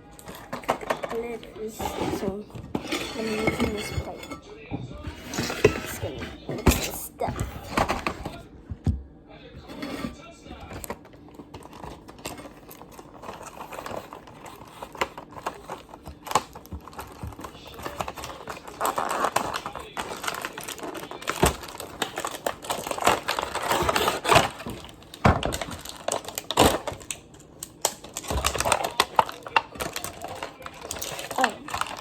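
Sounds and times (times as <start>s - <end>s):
utensil scraping and tapping plate: 0.2s - 8.4s, 9.6s - 11.0s.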